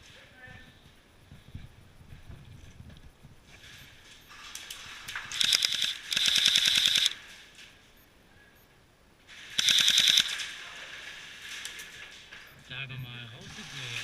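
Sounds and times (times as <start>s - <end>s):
airsoft gun bursts: 5.3s - 7.2s, 9.5s - 10.5s.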